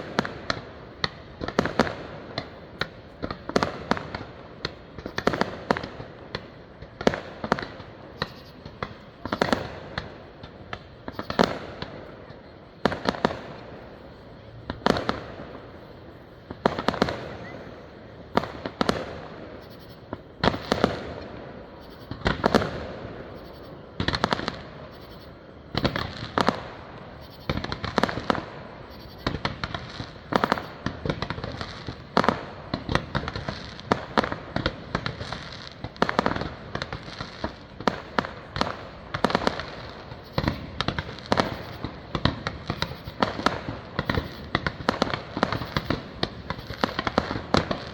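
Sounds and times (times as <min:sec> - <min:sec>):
fireworks bursting with bangs: 0:00.0 - 0:47.9.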